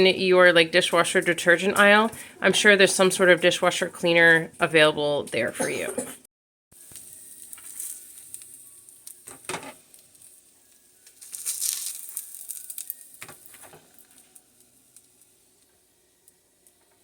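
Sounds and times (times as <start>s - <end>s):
food sizzling in a pan: 6.8s - 17.0s.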